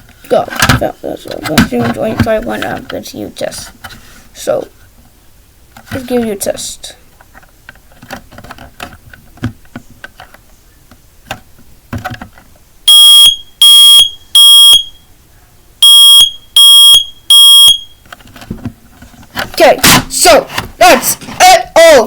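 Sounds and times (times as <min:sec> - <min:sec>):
smoke alarm beeping: 0:12.9 - 0:15.1, 0:15.8 - 0:18.0.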